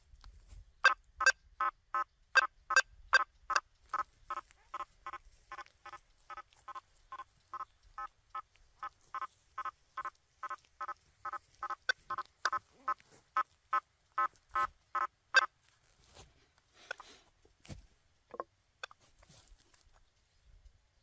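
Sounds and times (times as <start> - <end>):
metal detector buzzy beeps: 9.1 - 15.5.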